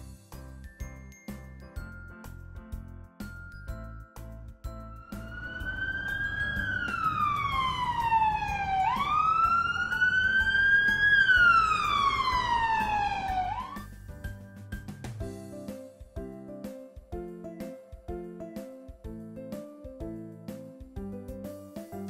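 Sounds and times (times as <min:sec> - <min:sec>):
low rumble: 0:04.9 - 0:13.3
emergency vehicle wail siren: 0:05.0 - 0:13.9.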